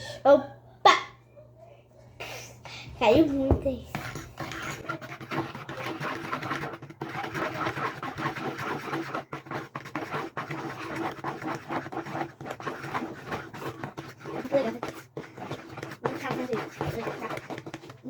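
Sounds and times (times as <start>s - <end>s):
spoon scraping in mixing bowl: 3.6s - 18.0s.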